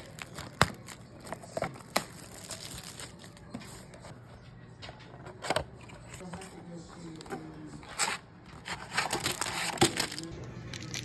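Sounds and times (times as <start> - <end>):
foil wrapper crinkling and tearing: 0.0 - 3.5, 9.0 - 11.0.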